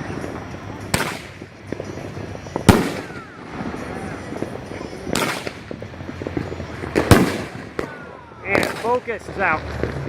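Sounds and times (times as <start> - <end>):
fireworks booming: 0.0 - 10.0
crackling pops: 0.9 - 3.4, 5.1 - 10.0.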